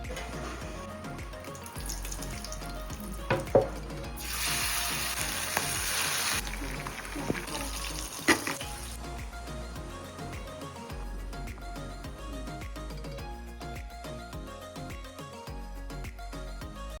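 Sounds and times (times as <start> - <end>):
food sizzling in hot oil: 1.4 - 9.1
utensils knocking: 3.2 - 4.1.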